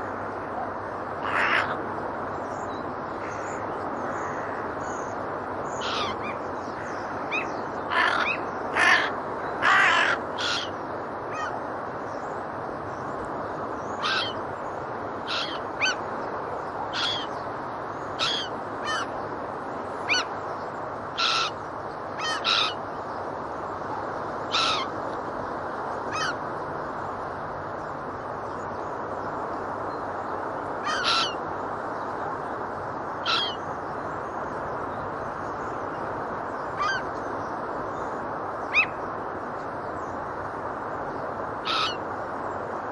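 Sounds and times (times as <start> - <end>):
gulls and geese calling: 0.0 - 1.8, 5.7 - 11.6, 14.0 - 14.4, 15.2 - 16.1, 16.9 - 17.4, 18.2 - 19.2, 20.0 - 20.3, 21.2 - 21.6, 22.2 - 22.8, 24.5 - 24.9, 26.1 - 26.4, 30.8 - 31.4, 33.2 - 33.6, 36.8 - 37.1, 38.7 - 39.0, 41.6 - 42.0.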